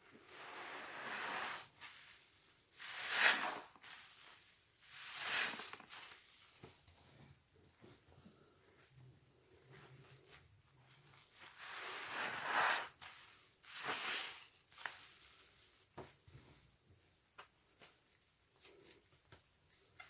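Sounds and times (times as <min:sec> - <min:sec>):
sponge squelching: 0:00.0 - 0:06.6, 0:11.0 - 0:16.6.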